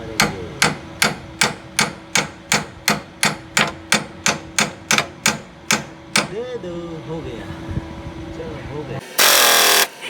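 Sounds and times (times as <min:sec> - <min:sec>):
hammer striking metal: 0:00.1 - 0:06.4.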